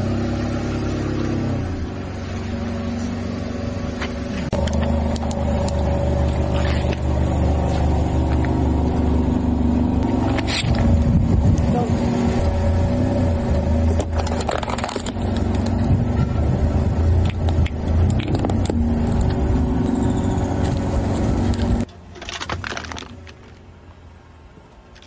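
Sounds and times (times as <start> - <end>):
car engine running: 0.0 - 23.8.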